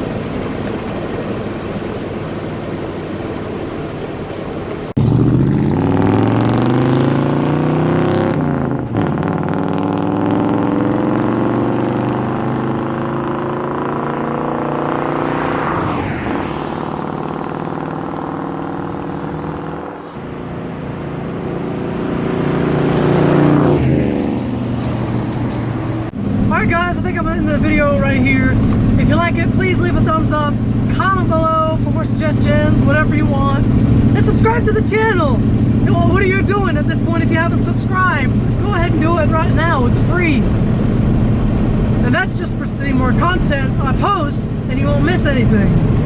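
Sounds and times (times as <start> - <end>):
truck engine revving through gears: 0.0 - 46.0.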